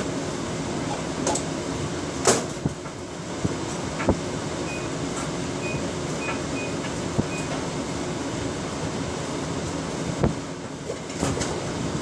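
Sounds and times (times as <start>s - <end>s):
steady low hum: 0.0s - 12.0s
microwave keypad beeping: 4.6s - 5.0s, 5.6s - 7.6s.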